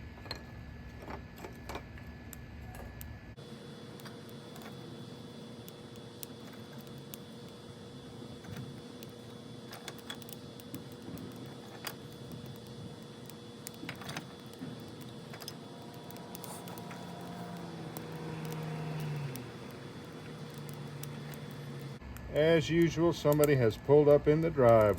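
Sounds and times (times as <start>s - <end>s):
sharp clicks and crackles: 3.9s - 24.9s
car engine hum: 15.8s - 22.1s.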